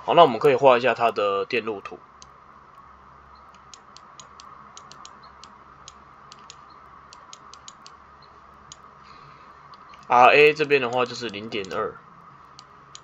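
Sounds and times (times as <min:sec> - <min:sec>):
faint steady hum: 0:00.0 - 0:13.0
light clicks and taps: 0:10.9 - 0:11.8.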